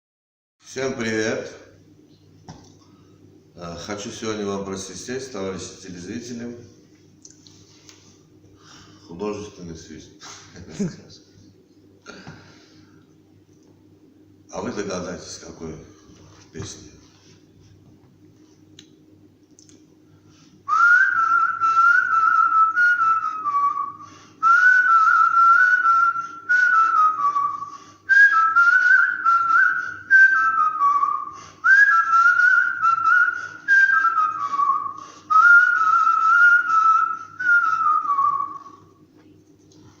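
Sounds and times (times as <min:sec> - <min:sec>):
man whistling a melody: 0:20.7 - 0:38.9.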